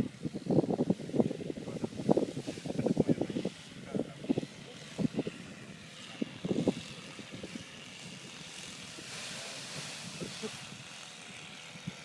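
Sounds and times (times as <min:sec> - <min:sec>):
rush of wind: 0:00.0 - 0:12.0
wind buffeting microphone: 0:00.0 - 0:12.0.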